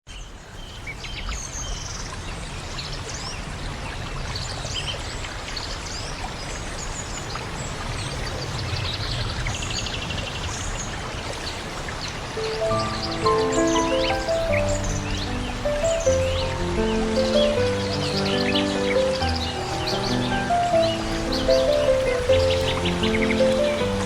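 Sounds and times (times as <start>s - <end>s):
birds chirping and whistling: 12.4s - 24.0s
steady rushing noise: 12.4s - 24.0s.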